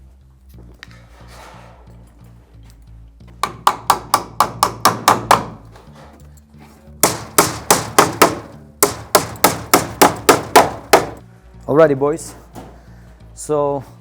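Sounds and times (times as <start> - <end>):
faint background music: 0.0 - 14.0
hammer driving nails: 3.4 - 5.7, 7.0 - 11.2.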